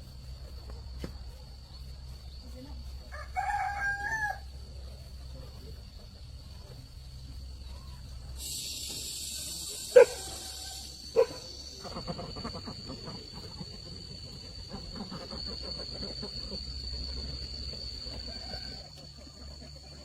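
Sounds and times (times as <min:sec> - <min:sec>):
ducks quacking: 0:09.7 - 0:20.0.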